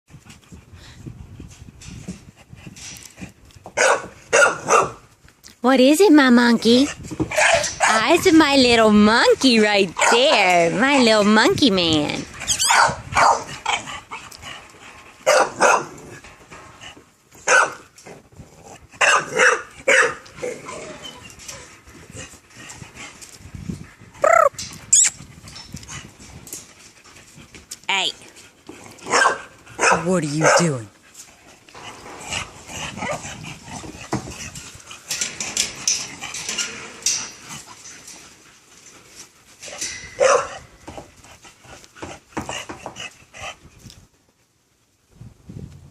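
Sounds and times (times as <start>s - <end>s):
dog barking: 3.8s - 5.0s, 12.6s - 13.8s, 15.3s - 16.0s, 17.5s - 17.8s, 19.0s - 20.2s, 29.1s - 30.7s, 40.2s - 40.6s
dog whimpering: 24.2s - 25.1s.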